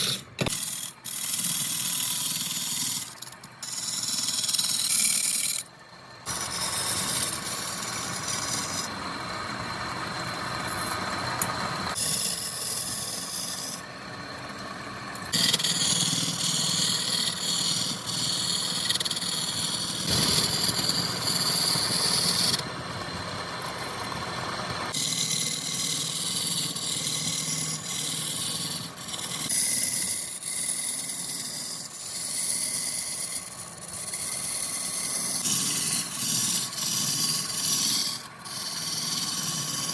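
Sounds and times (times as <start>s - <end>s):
power woodworking machinery cutting wood: 6.3s - 30.6s, 34.3s - 39.9s.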